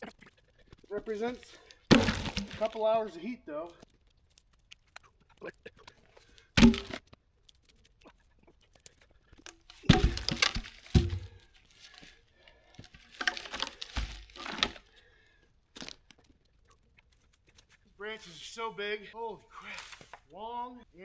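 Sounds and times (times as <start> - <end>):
twigs crackling and scraping: 0.0 - 20.4
heavy thuds: 1.9 - 2.8, 6.6 - 7.0, 9.9 - 11.5, 13.2 - 14.8.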